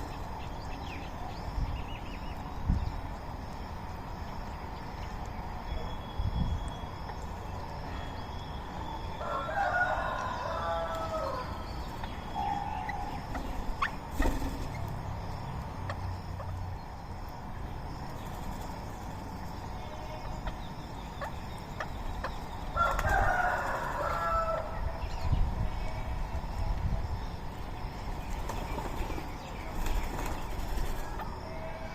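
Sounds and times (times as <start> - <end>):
rooster crowing: 9.2 - 11.7, 22.8 - 25.0.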